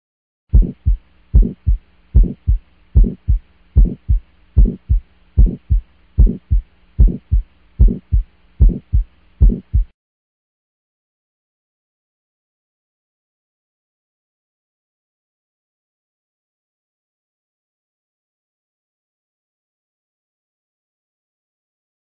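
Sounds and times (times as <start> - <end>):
faint steady hum: 0.5 - 9.9
heartbeat thumps: 0.5 - 9.9.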